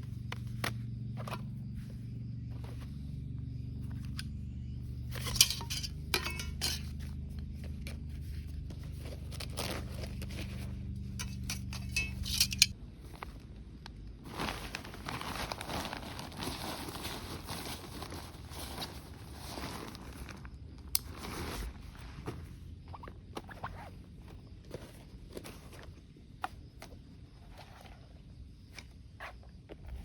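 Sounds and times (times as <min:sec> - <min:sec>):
steady low hum: 0:00.0 - 0:14.2
metal cookware clinking: 0:05.2 - 0:07.0, 0:11.1 - 0:12.7.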